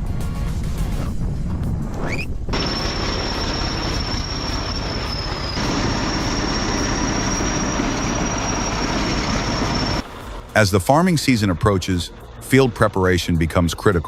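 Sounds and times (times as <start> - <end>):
high-pitched machine whine: 2.5 - 10.6
heavy machinery rumble: 2.5 - 14.0.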